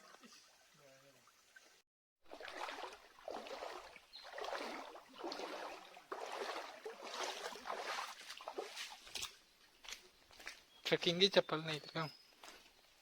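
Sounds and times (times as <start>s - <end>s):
water splashing and sloshing: 0.0s - 10.6s.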